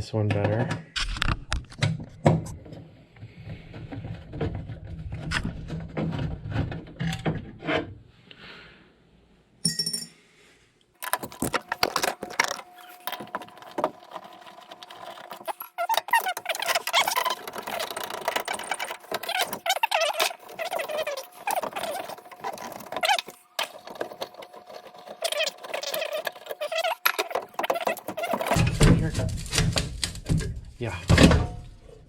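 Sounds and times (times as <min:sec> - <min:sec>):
metal parts clicking and rattling: 0:11.0 - 0:31.6.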